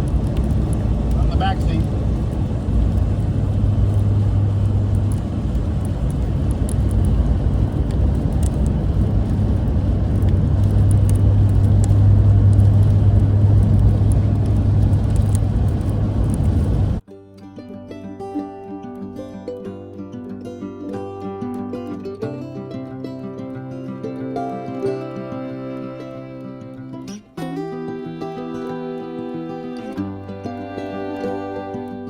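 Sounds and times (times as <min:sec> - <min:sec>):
engine and tyres drone: 0:00.0 - 0:17.0.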